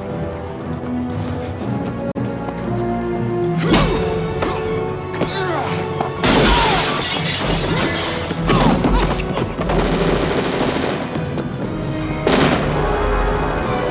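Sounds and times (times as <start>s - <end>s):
action film music: 0.0s - 13.9s.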